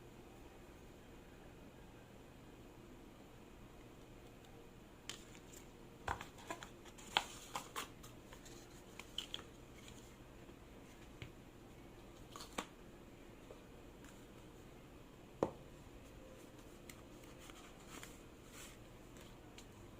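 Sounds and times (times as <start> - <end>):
phone packaging clicks and rustles: 5.1 - 10.0.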